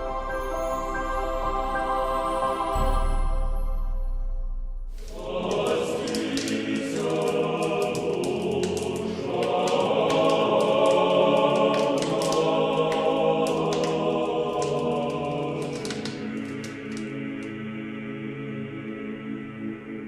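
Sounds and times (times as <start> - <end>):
choir singing: 0.0 - 4.1, 5.0 - 20.0
held ambient chord: 0.0 - 6.7.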